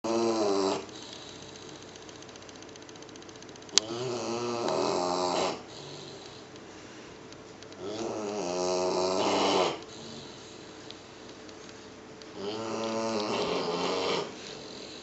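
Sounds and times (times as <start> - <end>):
puppy snoring: 0.0 - 1.9, 3.7 - 6.5, 7.8 - 10.8, 12.3 - 15.0.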